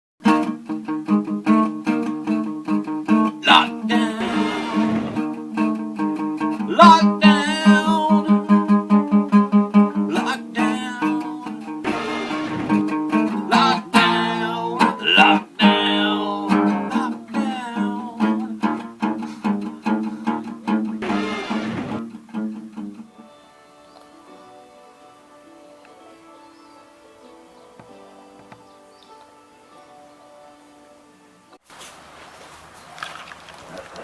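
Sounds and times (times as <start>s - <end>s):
acoustic guitar plucked and strummed: 0.2s - 23.4s
person singing: 3.4s - 5.7s, 6.7s - 8.8s, 10.0s - 18.7s.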